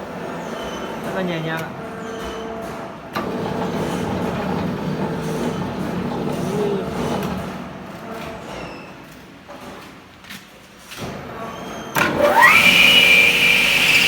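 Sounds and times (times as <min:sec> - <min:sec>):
electric motor humming: 0:12.2 - 0:14.0.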